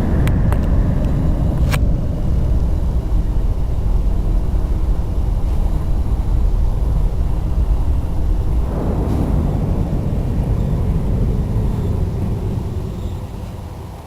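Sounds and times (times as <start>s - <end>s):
deep rumbling drone: 0.0s - 14.0s.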